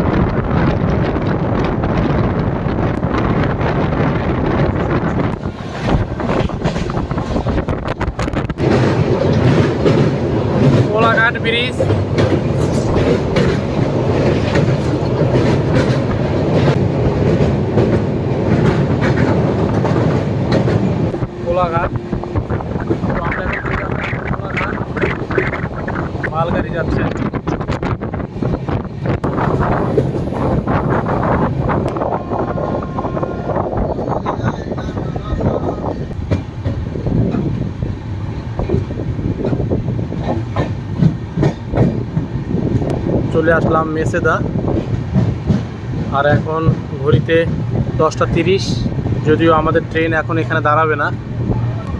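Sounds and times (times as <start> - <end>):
train rumbling over bridge: 0.0 - 51.9
wheels clacking over rail joints: 5.1 - 31.9, 35.9 - 43.2.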